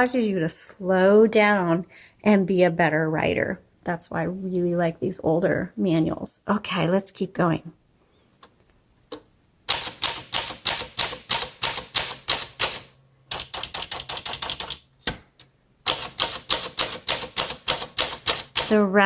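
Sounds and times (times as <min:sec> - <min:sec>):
manual typewriter typing: 0:09.7 - 0:14.9, 0:15.9 - 0:18.8.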